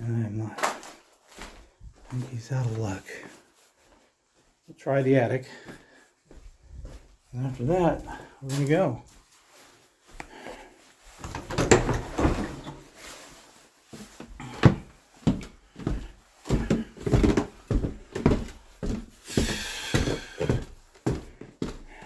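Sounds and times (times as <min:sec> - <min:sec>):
footsteps climbing stairs: 0:09.6 - 0:13.1, 0:13.9 - 0:22.0
door knocks and rustles: 0:11.2 - 0:12.8.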